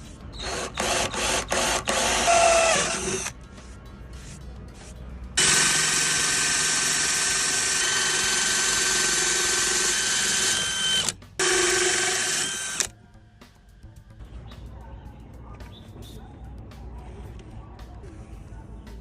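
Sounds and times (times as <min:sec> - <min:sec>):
motor whirring with whine: 0:05.4 - 0:12.9.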